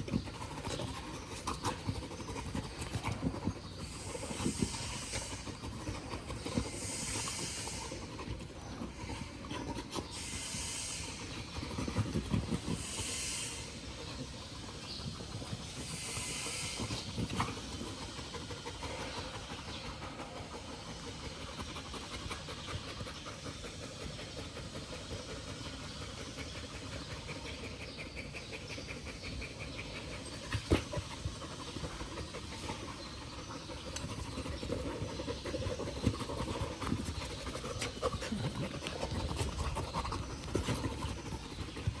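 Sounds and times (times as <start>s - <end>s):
dog panting: 0.0s - 42.0s.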